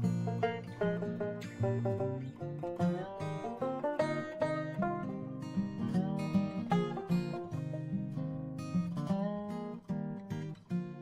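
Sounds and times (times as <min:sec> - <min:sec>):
acoustic guitar strummed and plucked: 0:00.0 - 0:11.0.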